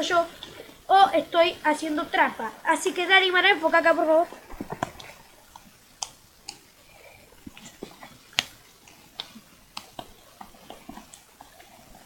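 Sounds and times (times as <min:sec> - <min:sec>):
spoon stirring sticky slime: 0:04.7 - 0:12.0.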